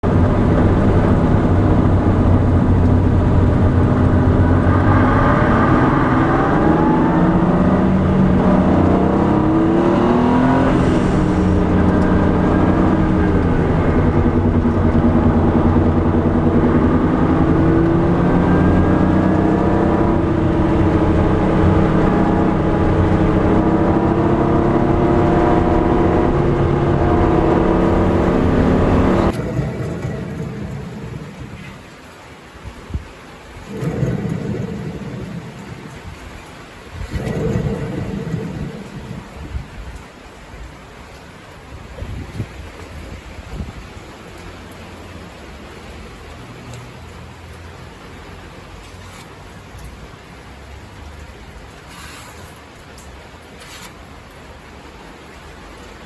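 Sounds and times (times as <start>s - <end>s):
car engine: 0.0s - 32.4s, 33.5s - 40.3s.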